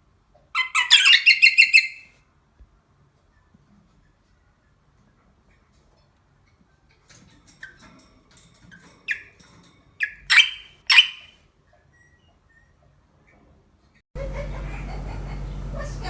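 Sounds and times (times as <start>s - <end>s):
harsh animal squeals: 0.6s - 2.0s
animal squeaks and clicks: 0.6s - 2.1s, 8.7s - 9.4s, 10.0s - 13.4s.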